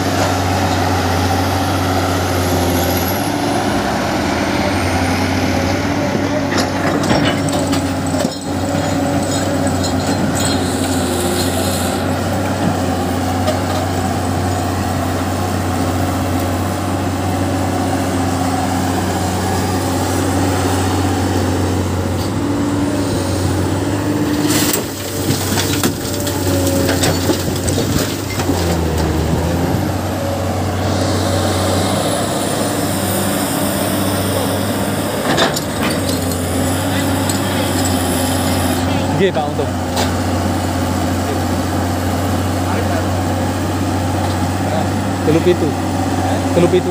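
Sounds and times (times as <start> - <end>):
heavy diesel machinery droning: 0.0 - 46.9
machinery knocks and clatters: 6.5 - 10.7, 24.3 - 29.8.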